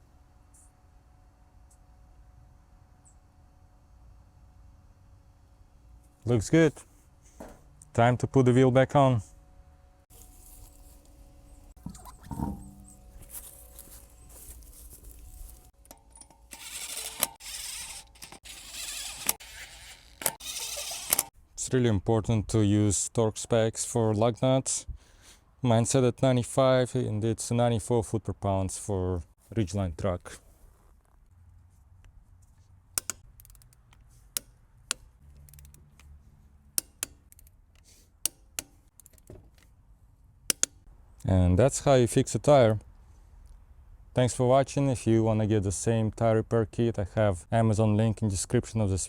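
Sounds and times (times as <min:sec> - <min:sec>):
wheel handling noise: 0:10.1 - 0:21.3
sharp metallic clicks: 0:15.8 - 0:21.3, 0:32.9 - 0:36.1, 0:36.8 - 0:39.3, 0:40.5 - 0:40.8.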